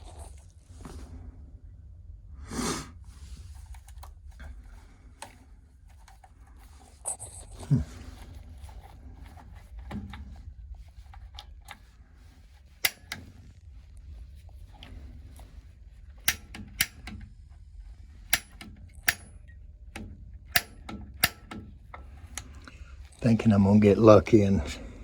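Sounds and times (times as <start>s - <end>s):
steady low hum: 0.0s - 25.0s
hands clicking and scraping valve: 3.4s - 23.3s.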